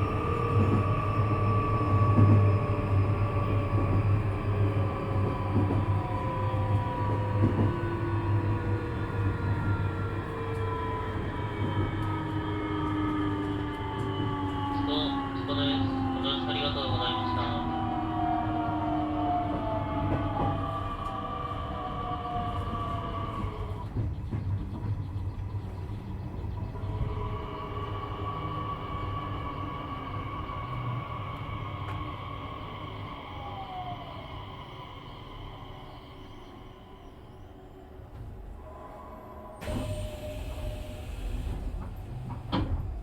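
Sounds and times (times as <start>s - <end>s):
wheels rumbling on rail: 0.0s - 43.0s
train motor whine: 38.0s - 43.0s.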